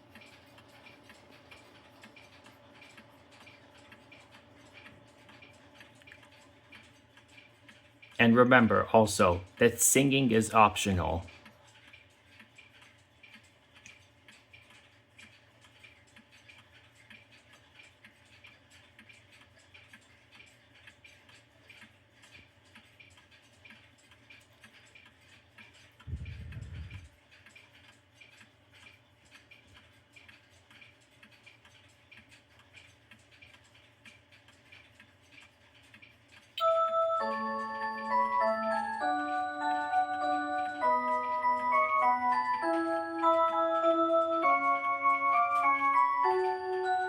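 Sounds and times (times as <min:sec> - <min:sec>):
mantel clock ticking: 0:00.0 - 0:47.0
clock chime melody: 0:36.6 - 0:47.0.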